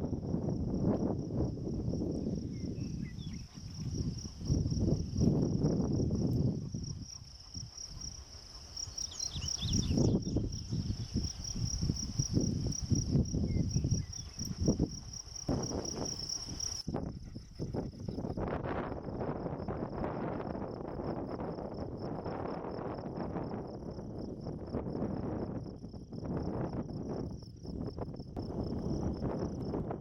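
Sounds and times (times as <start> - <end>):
insect trilling: 2.1 - 17.5
gusty low rumble: 16.8 - 30.0.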